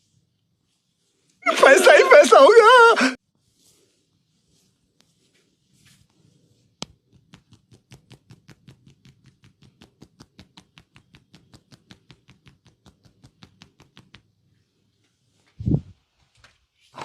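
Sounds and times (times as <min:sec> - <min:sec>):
hands tapping on head: 0:06.8 - 0:14.3.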